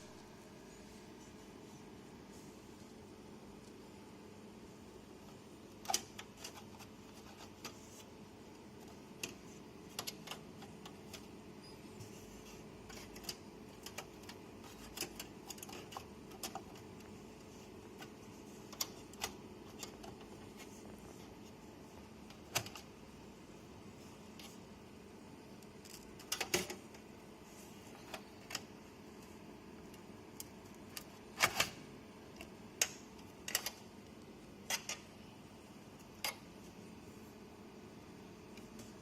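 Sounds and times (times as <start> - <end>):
steady low hum: 0.0 - 39.0
computer hardware clicks and knocks: 5.2 - 8.1, 8.8 - 21.2, 22.0 - 22.9, 25.6 - 27.1, 30.0 - 35.2.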